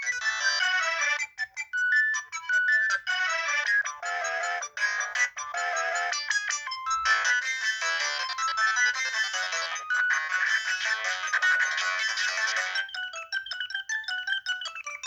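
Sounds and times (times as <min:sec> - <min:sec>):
polyphonic phone ringtone: 0:00.0 - 0:15.0.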